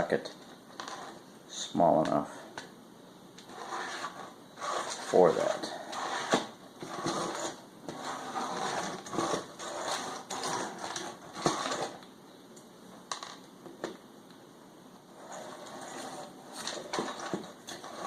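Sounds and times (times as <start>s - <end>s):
scraping on plastic faceplate: 0.8s - 1.2s, 3.4s - 12.0s, 15.2s - 18.0s.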